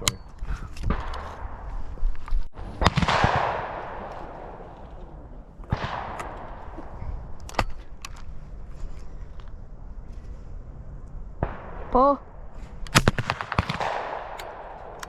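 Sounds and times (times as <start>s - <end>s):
shotgun shots echoing: 2.5s - 8.0s, 11.4s - 15.0s.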